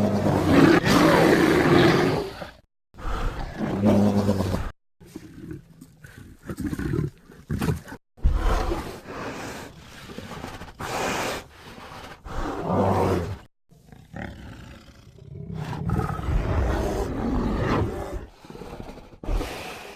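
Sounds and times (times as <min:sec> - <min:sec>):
growling dinosaur roars: 0:14.1 - 0:18.8.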